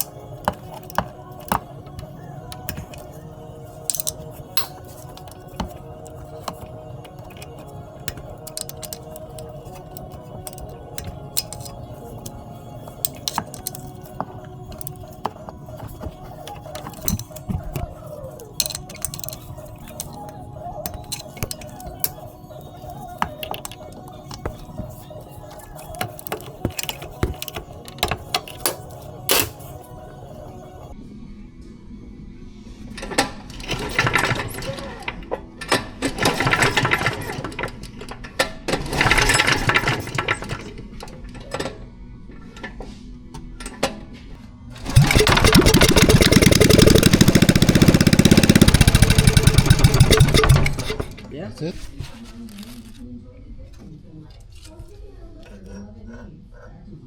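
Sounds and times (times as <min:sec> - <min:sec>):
metallic clicks of hand tools: 0:03.9 - 0:17.9, 0:18.5 - 0:22.2, 0:22.8 - 0:29.7, 0:44.8 - 0:51.2
dense rattling noise: 0:44.8 - 0:51.2.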